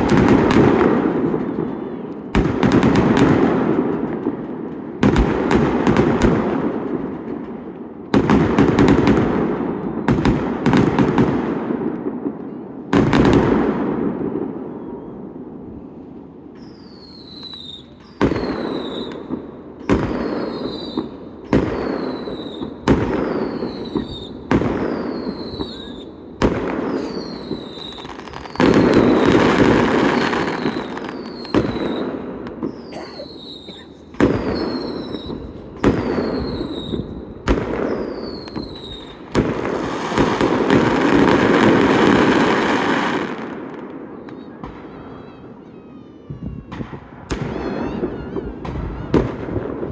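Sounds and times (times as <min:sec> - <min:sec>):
firework bangs: 0:00.0 - 0:14.8, 0:16.5 - 0:45.6, 0:46.5 - 0:49.9
fireworks crackling and rumbling: 0:00.0 - 0:49.9.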